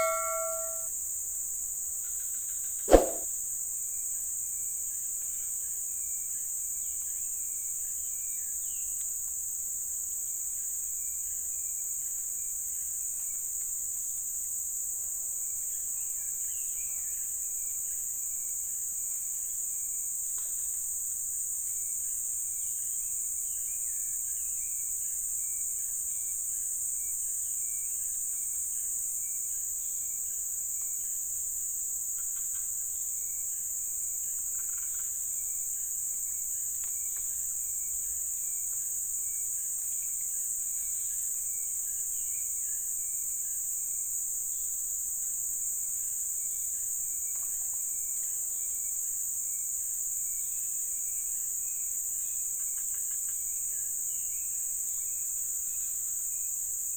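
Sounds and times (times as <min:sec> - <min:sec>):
insect drone: 0:00.0 - 0:00.8.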